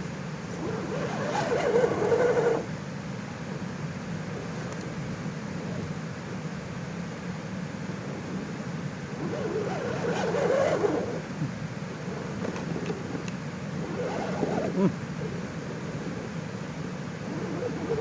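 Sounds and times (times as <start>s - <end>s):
rc car motors whirring: 0.5s - 2.7s, 9.2s - 11.3s, 12.1s - 16.4s, 17.2s - 18.0s.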